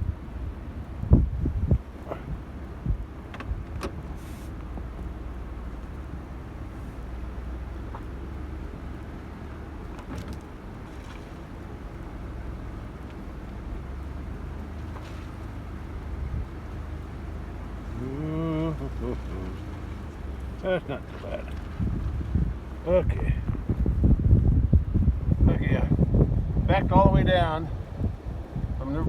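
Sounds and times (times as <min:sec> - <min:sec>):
vehicle engine running: 0:00.0 - 0:29.0
light clicks and knocks: 0:02.9 - 0:05.2, 0:07.8 - 0:08.5, 0:09.8 - 0:11.8.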